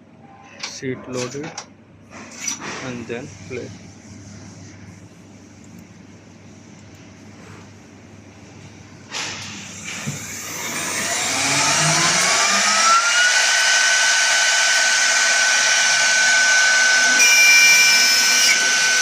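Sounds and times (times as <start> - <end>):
router spindle whine: 9.7 - 19.0.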